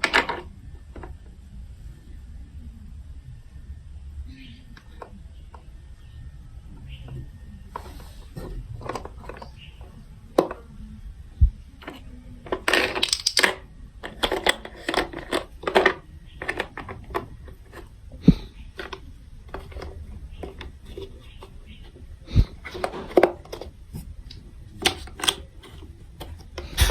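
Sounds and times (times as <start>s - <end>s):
plastic toy pieces clicking: 11.8s - 17.8s.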